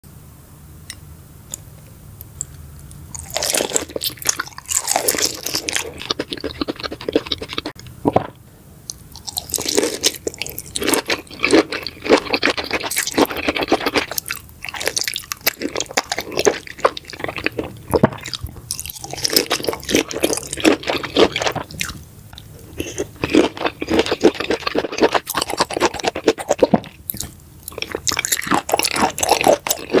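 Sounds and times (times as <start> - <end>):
lobster being chewed and crunched: 3.2 - 8.3, 9.2 - 30.0.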